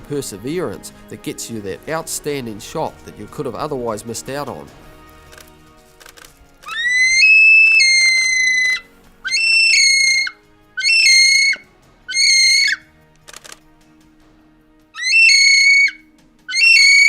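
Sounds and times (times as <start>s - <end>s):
kiwi bird shrill whistles: 6.7s - 12.8s, 15.0s - 17.0s.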